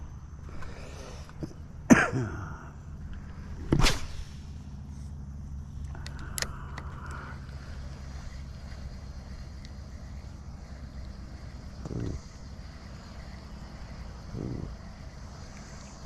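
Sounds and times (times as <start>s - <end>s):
man coughing: 1.9s - 2.7s.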